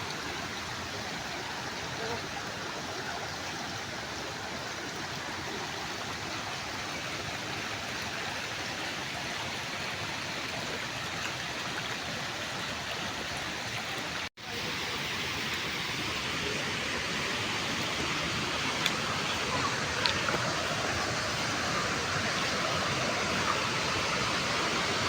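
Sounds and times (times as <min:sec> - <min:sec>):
waterfall roaring: 0:14.1 - 0:25.0.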